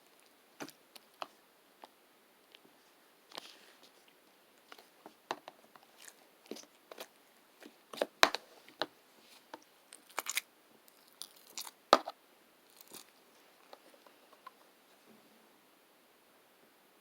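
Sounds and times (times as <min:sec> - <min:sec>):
crisp crunches and clicks: 0:09.6 - 0:11.8, 0:12.7 - 0:14.6.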